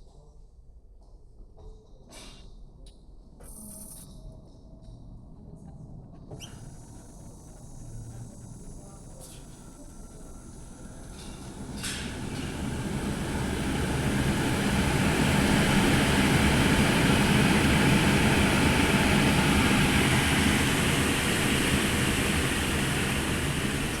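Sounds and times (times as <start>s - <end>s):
table saw motor humming: 10.2s - 24.0s.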